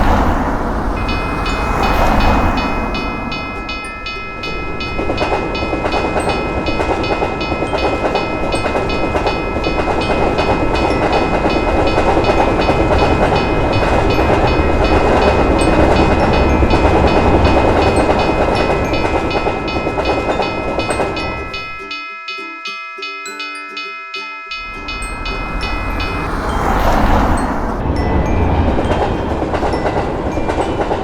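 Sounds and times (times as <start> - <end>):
passing train rumbling: 0.0 - 22.8, 24.5 - 31.0
railroad crossing bell ringing: 0.0 - 31.0.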